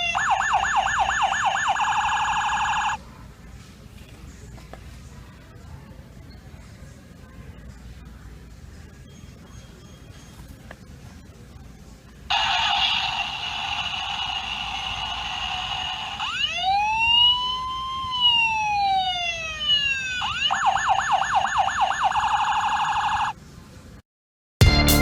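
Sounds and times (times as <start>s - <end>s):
toy electronic siren: 0.0s - 3.0s, 12.3s - 23.4s.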